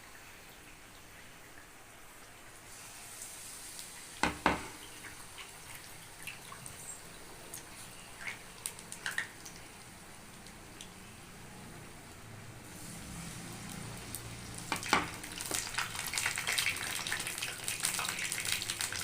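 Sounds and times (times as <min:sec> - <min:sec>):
batter frying in hot oil: 0:00.0 - 0:19.0.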